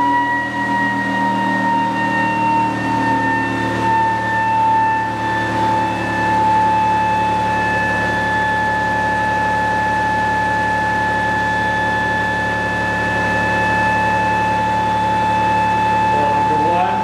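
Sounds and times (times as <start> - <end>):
generator high-pitched whine: 0.0 - 17.0
low hum: 2.0 - 17.0.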